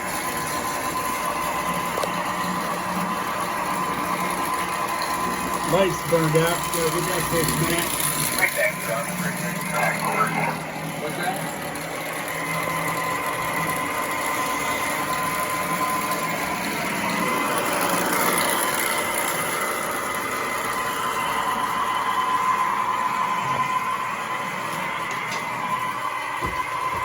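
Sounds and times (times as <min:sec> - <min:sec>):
wheels rattling on rails: 0:00.0 - 0:21.6
toy train motor whine: 0:00.0 - 0:27.0.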